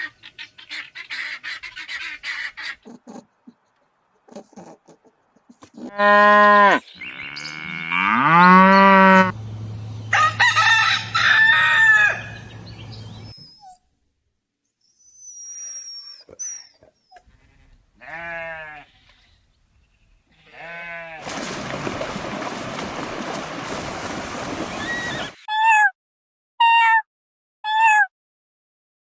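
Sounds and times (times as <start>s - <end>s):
animal calls: 24.4s - 25.9s.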